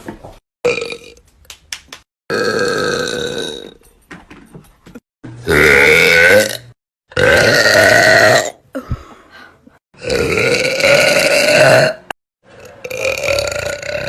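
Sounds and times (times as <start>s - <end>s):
woman belching loudly: 2.3s - 3.8s, 5.4s - 8.6s, 10.0s - 12.0s.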